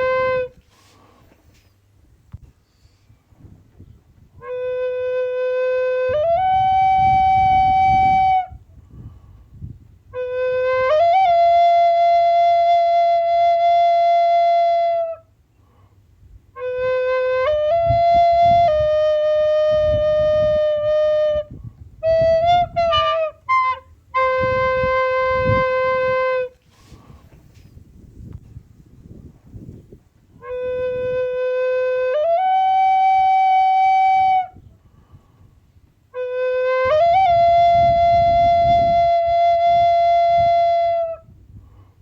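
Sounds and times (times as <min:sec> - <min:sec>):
flute playing slow melody: 0:00.0 - 0:00.9, 0:04.4 - 0:08.6, 0:10.0 - 0:15.4, 0:16.5 - 0:27.1, 0:30.4 - 0:34.7, 0:36.1 - 0:41.4.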